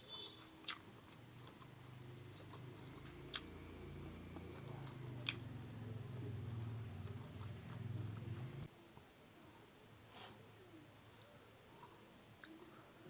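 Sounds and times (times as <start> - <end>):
person chewing food: 0.4 - 5.5, 6.2 - 8.7
low hum: 1.3 - 8.7.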